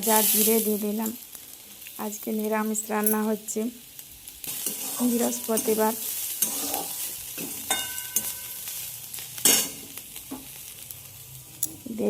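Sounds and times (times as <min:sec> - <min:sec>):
food sizzling in oil: 0:00.0 - 0:12.0
spatula scraping pan: 0:04.5 - 0:08.6.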